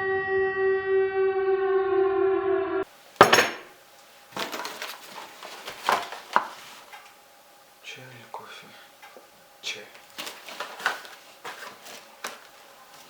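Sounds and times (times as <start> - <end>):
siren-like horn tone: 0.0 - 2.8
clattering knocks and clinks: 3.2 - 3.7, 4.4 - 6.6.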